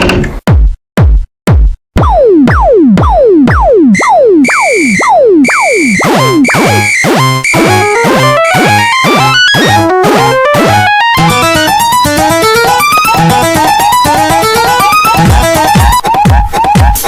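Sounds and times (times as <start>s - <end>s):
drum machine kick drum: 0.0s - 17.0s
electronic dance music: 0.5s - 17.0s
repeated high beep: 2.0s - 10.7s
quick synth melody: 2.0s - 16.3s.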